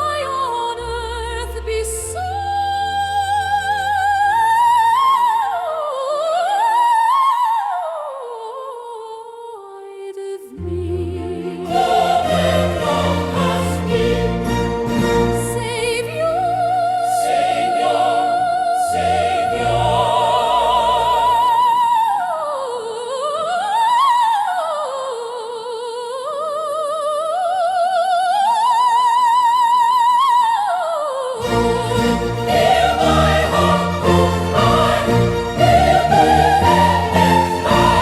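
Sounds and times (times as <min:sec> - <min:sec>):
low accompaniment: 0:31.4 - 0:38.0.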